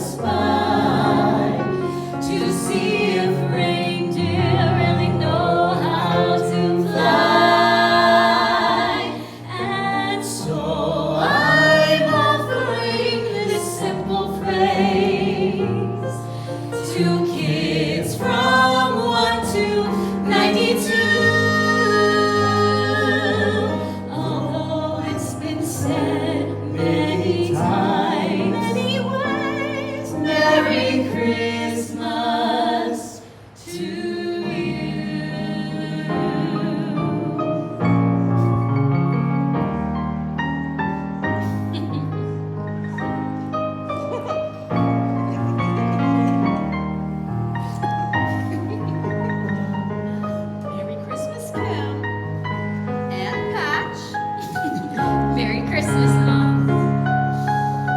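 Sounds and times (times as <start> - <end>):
voices singing a slow ballad: 0.0 - 38.6
sustained musical accompaniment: 0.0 - 57.9.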